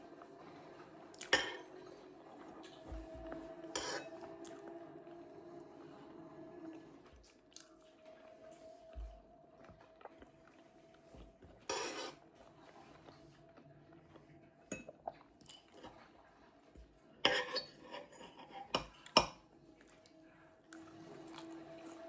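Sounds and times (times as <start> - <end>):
cutlery clinking on plates: 3.8 - 4.2, 11.7 - 12.2, 17.2 - 19.4.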